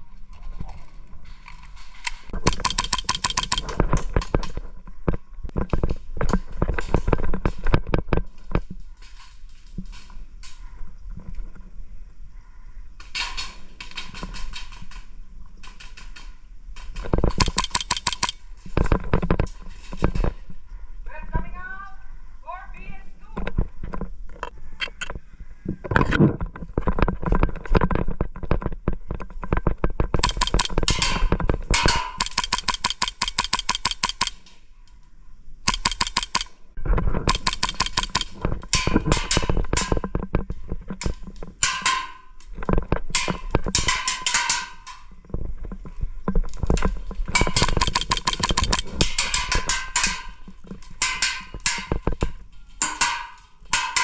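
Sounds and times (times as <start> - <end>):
airsoft guns firing rapid bursts: 2.5 - 3.7, 17.4 - 18.3, 30.2 - 31.1, 31.8 - 34.3, 35.7 - 36.5, 37.3 - 38.4, 47.4 - 49.6.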